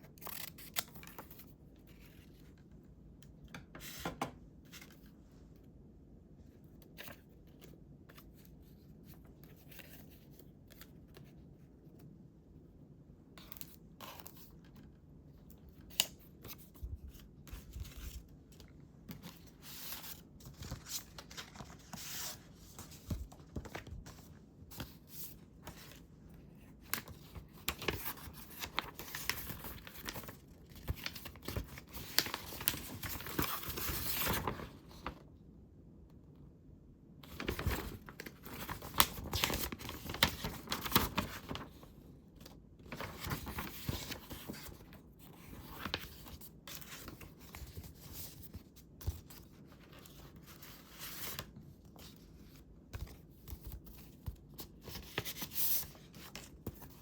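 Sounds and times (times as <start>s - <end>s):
paper rustling: 15.9s - 35.2s, 37.2s - 57.0s.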